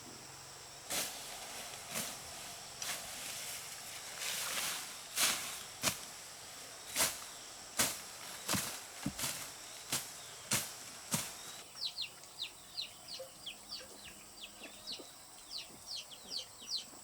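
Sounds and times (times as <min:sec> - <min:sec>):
leaves and stems rustling: 0:00.8 - 0:11.7
blade chopping brush: 0:00.9 - 0:11.6.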